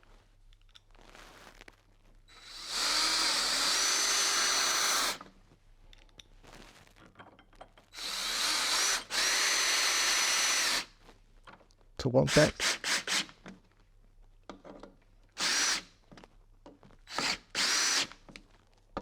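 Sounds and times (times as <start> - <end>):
power drill driving screws: 2.3 - 5.3, 8.0 - 10.9, 12.3 - 13.4, 15.4 - 15.9, 17.1 - 18.3.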